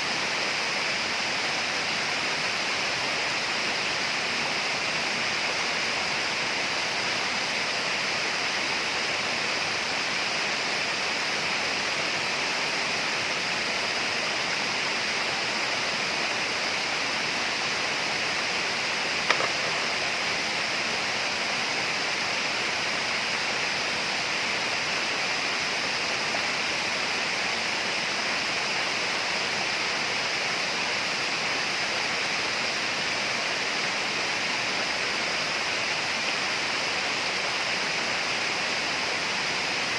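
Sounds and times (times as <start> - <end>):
high hiss: 0.0 - 39.9
steady rushing rainforest noise: 0.0 - 39.9
sharp click: 19.2 - 19.9.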